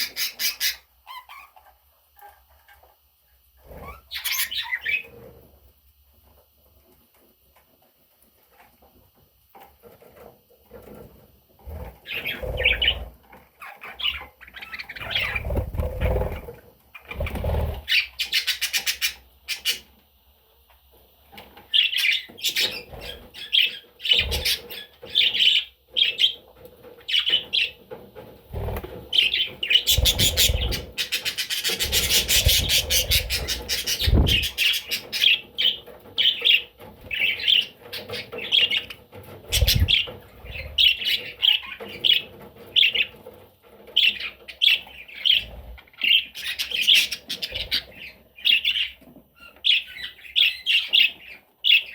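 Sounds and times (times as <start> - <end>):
budgie chirping and warbling: 3.7 - 5.1, 12.0 - 19.8, 21.8 - 26.4, 29.2 - 35.8, 39.5 - 41.8.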